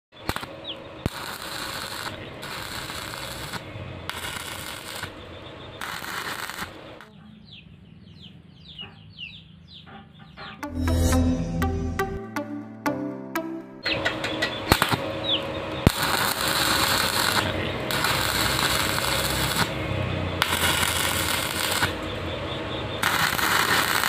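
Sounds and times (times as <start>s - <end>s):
welding arc crackling: 0.2s - 5.2s, 5.8s - 6.9s, 15.8s - 19.8s, 20.4s - 22.1s, 23.0s - 24.0s
birds chirping: 7.1s - 10.6s.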